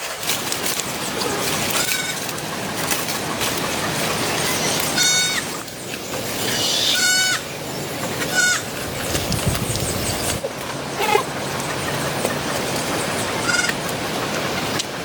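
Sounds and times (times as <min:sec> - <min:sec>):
animal bleating: 0:01.2 - 0:02.2, 0:05.0 - 0:05.4, 0:08.3 - 0:08.7, 0:13.4 - 0:13.8.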